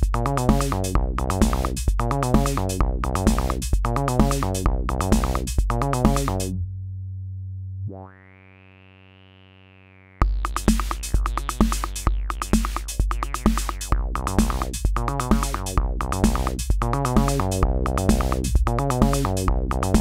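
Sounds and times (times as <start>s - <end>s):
drum machine beat with bass line: 0.0s - 6.6s, 10.2s - 20.0s
low bass synth note: 6.3s - 10.1s
buzzy sustained synth tone: 6.5s - 12.4s.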